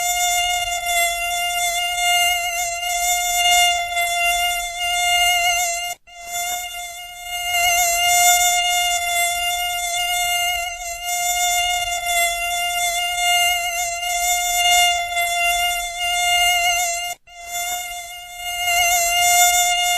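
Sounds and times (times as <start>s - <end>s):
mosquito whine: 0.0s - 19.9s.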